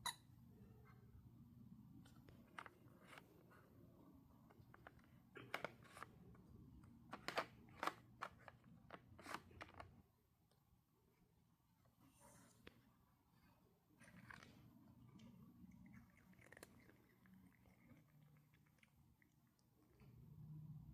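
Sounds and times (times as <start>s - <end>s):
cat crunching treats: 14.0s - 20.0s.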